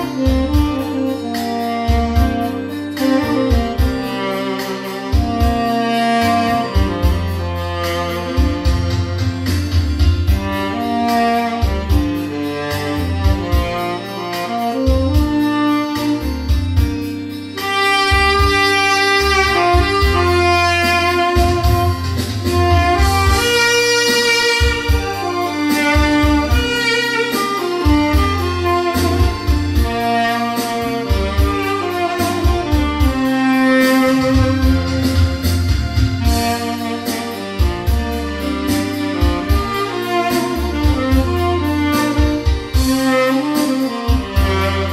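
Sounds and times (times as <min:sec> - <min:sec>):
tenor saxophone slow melody: 0:00.0 - 0:44.9
backing track bass pulse: 0:18.1 - 0:44.9.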